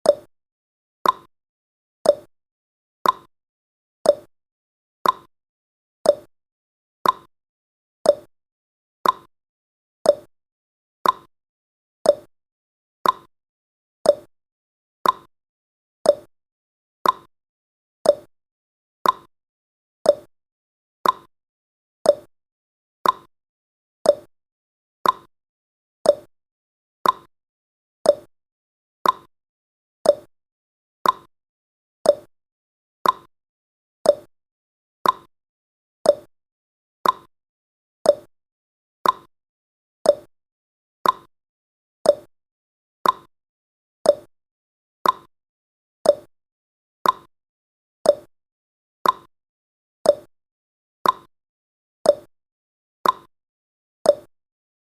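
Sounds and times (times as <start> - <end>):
timer ticking clicks: 0.0 - 0.3, 1.0 - 1.3, 2.0 - 2.3, 3.0 - 3.3, 4.0 - 4.3, 5.0 - 5.3, 6.0 - 6.3, 7.0 - 7.3, 8.0 - 8.3, 9.0 - 9.3, 10.0 - 10.3, 11.0 - 11.3, 12.0 - 12.3, 13.0 - 13.3, 14.0 - 14.3, 15.0 - 15.3, 16.0 - 16.3, 17.0 - 17.3, 18.0 - 18.3, 19.0 - 19.3, 20.0 - 20.3, 21.0 - 21.3, 22.0 - 22.3, 23.0 - 23.3, 24.0 - 24.3, 25.0 - 25.3, 26.0 - 26.3, 27.0 - 27.3, 28.0 - 28.3, 29.0 - 29.3, 30.0 - 30.3, 31.0 - 31.3, 32.0 - 32.3, 33.0 - 33.3, 34.0 - 34.3, 35.0 - 35.3, 36.0 - 36.3, 37.0 - 37.3, 38.0 - 38.3, 39.0 - 39.3, 40.0 - 40.3, 41.0 - 41.3, 42.0 - 42.3, 43.0 - 43.3, 44.0 - 44.3, 45.0 - 45.3, 46.0 - 46.3, 47.0 - 47.3, 48.0 - 48.3, 49.0 - 49.3, 50.0 - 50.3, 51.0 - 51.3, 52.0 - 52.3, 53.0 - 53.3, 54.1 - 54.3.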